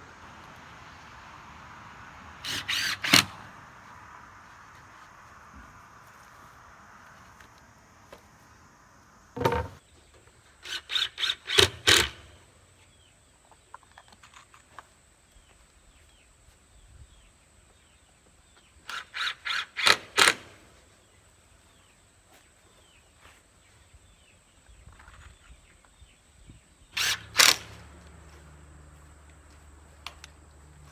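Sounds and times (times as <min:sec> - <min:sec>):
hammer driving nails into wood: 0:09.4 - 0:09.8.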